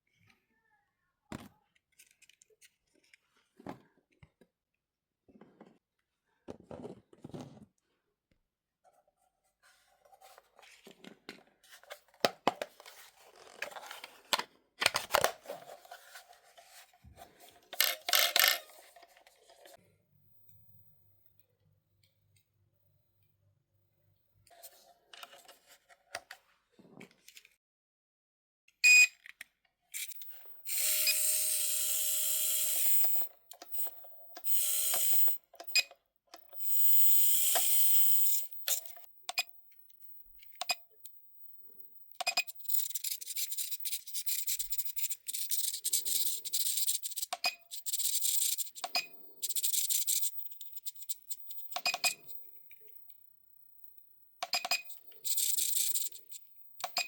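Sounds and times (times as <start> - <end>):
rc car motor whirring: 17.8 - 19.0, 30.0 - 35.8, 36.4 - 39.1, 42.2 - 52.4, 54.9 - 56.5.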